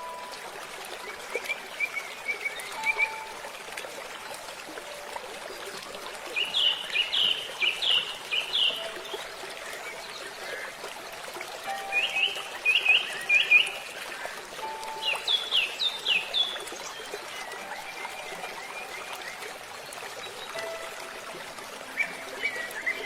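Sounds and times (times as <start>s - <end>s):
running water: 0.0s - 23.0s.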